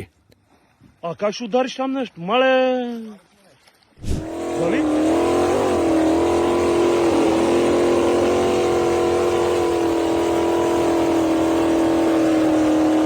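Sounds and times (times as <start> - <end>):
motorboat engine high revs: 4.0 - 13.0.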